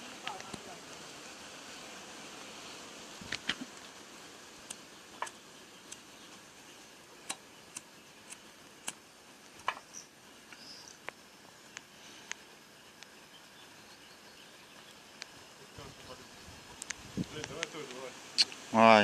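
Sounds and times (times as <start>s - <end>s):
faint steady hiss: 0.0s - 19.0s
fire crackling with sharp pops: 3.0s - 13.3s, 14.7s - 18.8s.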